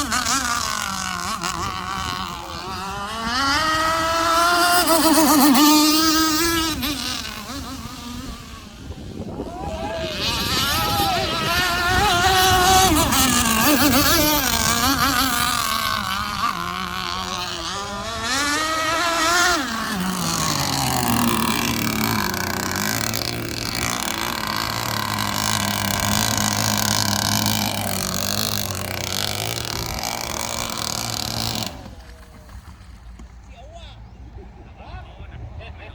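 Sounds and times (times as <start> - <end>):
model boat engine running: 0.0 - 33.4.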